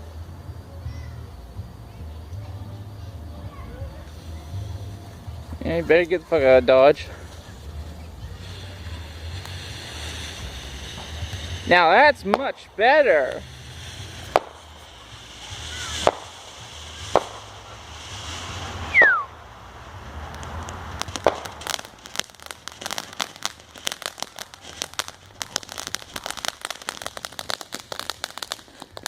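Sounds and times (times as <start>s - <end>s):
firework bangs: 3.2s - 29.0s
hiss: 3.6s - 29.0s
rapid crackling pops: 7.2s - 19.0s, 20.2s - 29.0s
falling whistle: 18.9s - 19.4s.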